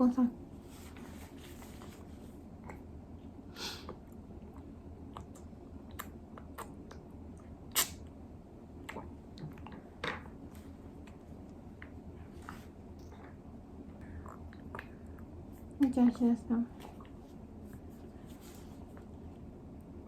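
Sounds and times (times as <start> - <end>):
low room hum: 0.0 - 20.0
baby's wet mouth smacks: 7.7 - 8.1.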